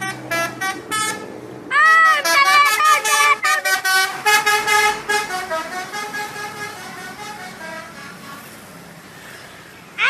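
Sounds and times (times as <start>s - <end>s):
bus horn playing a tune: 0.0s - 8.7s.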